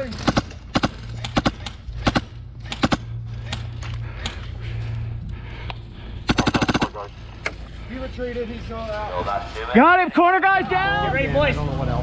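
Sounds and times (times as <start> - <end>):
airsoft guns firing: 0.0 - 4.4, 6.3 - 7.0.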